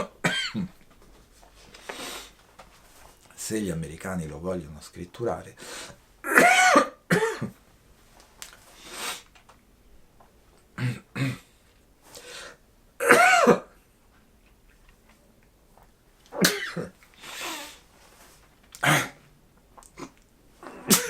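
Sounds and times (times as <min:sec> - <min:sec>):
man sneezing: 0:16.3 - 0:17.8, 0:18.8 - 0:19.2, 0:20.7 - 0:21.0.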